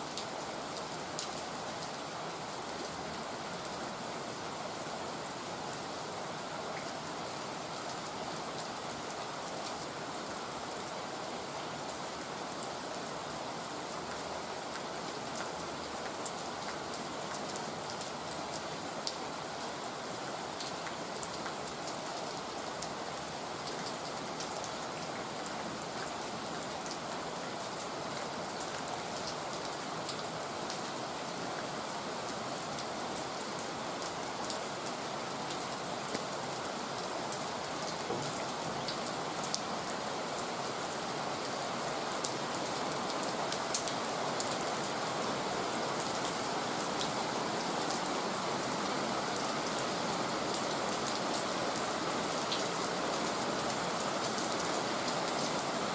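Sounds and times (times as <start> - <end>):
raindrops ticking on a surface: 20.4 - 27.3.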